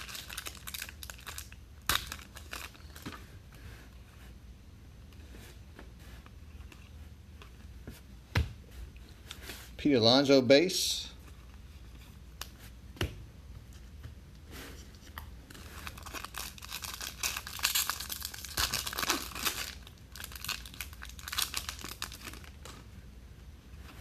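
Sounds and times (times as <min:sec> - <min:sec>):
foil wrapper tearing and crinkling: 0:00.0 - 0:03.0, 0:15.6 - 0:22.7.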